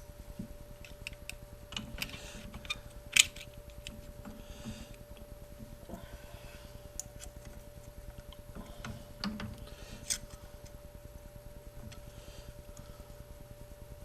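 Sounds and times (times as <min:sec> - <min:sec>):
faint steady hum: 0:00.0 - 0:14.0
metal parts clicking and tapping: 0:00.8 - 0:04.4.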